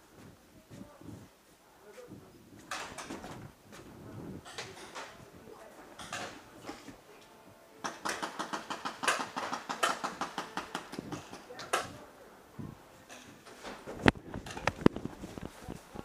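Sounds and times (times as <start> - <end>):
paintball markers firing: 7.8 - 11.4.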